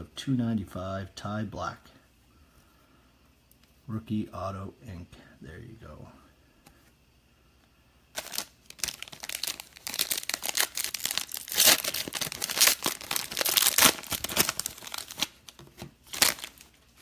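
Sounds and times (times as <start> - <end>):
plastic wrapping torn and crinkled: 8.1 - 17.0.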